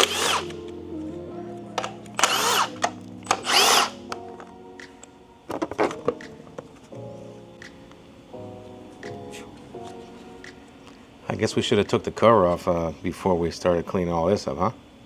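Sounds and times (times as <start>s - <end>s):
cordless power tool spinning: 0.0s - 0.6s, 1.8s - 4.0s
background music: 0.0s - 13.2s
sharp clicks: 1.8s - 4.2s.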